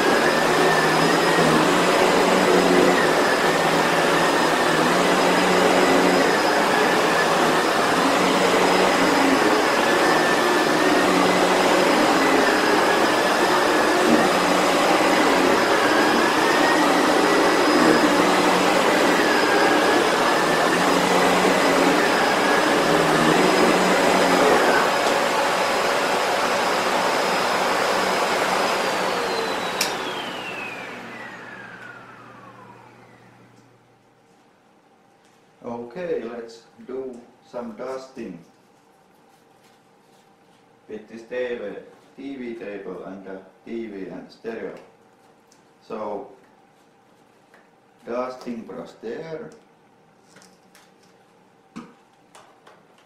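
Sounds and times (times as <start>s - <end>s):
vacuum cleaner whine: 0.0s - 34.0s.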